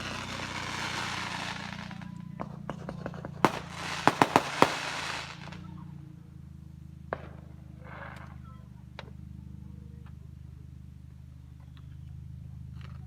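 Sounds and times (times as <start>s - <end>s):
fireworks crackling hiss: 0.0s - 5.8s, 7.2s - 8.4s
fireworks sharp bangs: 0.0s - 5.8s, 7.1s - 8.4s.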